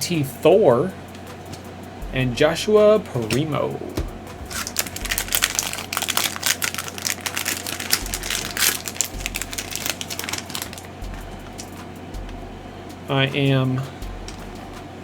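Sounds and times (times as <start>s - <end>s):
card pack wrapper crinkling: 4.4s - 10.9s.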